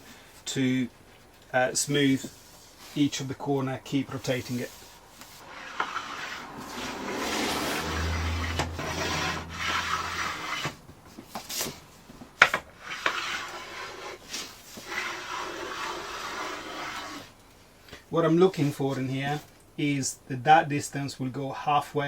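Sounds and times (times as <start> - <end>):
hand plane shaving wood: 4.1 - 11.8, 12.4 - 17.4.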